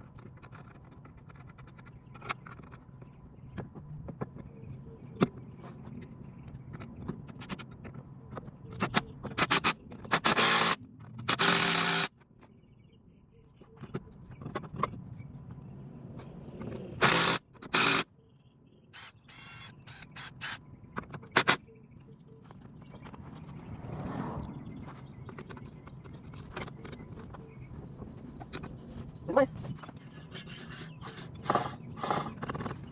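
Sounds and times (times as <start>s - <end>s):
impact wrench bursts: 9.4s - 12.1s, 17.0s - 18.1s, 19.0s - 20.6s, 21.4s - 21.6s.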